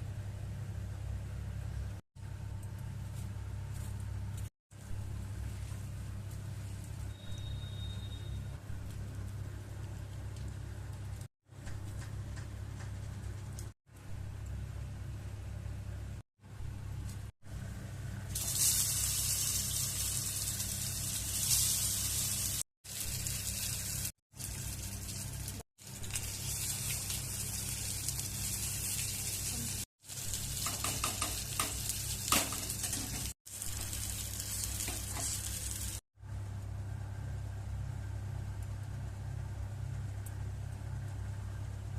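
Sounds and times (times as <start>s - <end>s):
kababs sizzling in a pan: 18.3s - 36.0s
steady low hum: 33.8s - 41.9s.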